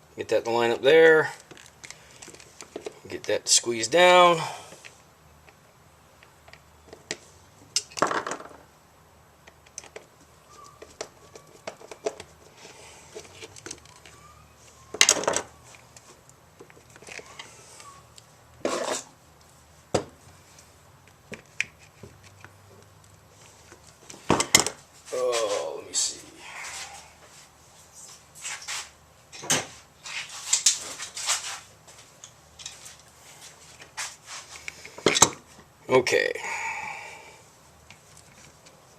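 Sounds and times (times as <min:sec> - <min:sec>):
rustling handling noises: 0:01.3 - 0:03.4, 0:09.5 - 0:35.8, 0:37.6 - 0:38.9.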